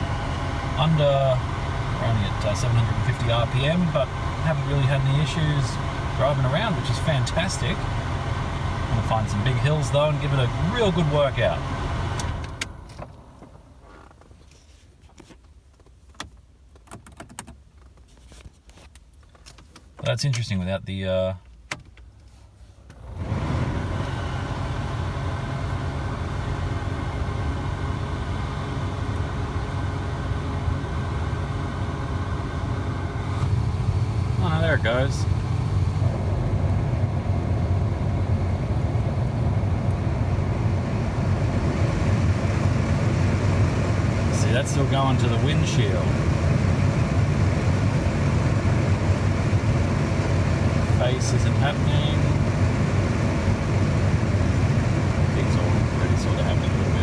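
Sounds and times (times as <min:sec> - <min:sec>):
car engine idling: 0:00.0 - 0:14.2, 0:23.0 - 0:57.0
ventilation fan blowing air: 0:23.0 - 0:57.0.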